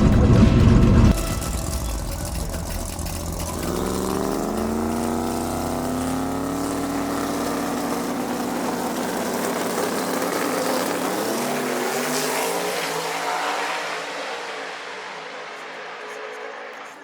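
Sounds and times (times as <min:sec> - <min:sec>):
car engine running: 0:00.0 - 0:12.2.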